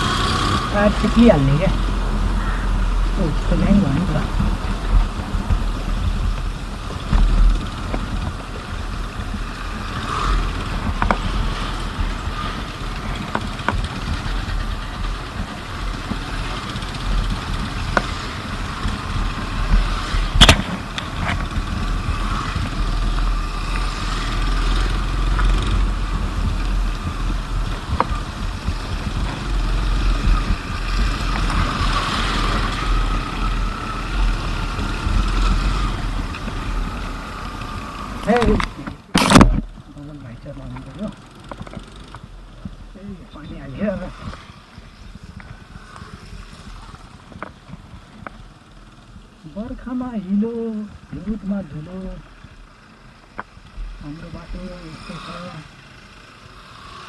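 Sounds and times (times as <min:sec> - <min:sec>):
motor scooter rumble: 0:00.0 - 0:57.0
knocks on rough road: 0:03.6 - 0:49.8.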